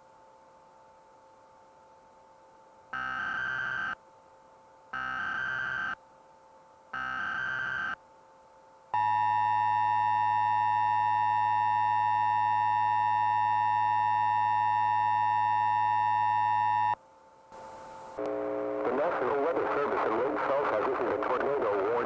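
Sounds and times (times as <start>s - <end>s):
steady electronic attention tone: 3.0s - 4.0s, 5.0s - 6.0s, 7.0s - 8.0s, 9.0s - 17.0s.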